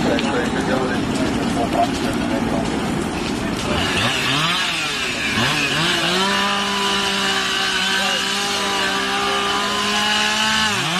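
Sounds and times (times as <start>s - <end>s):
chainsaw revving: 3.6s - 10.9s.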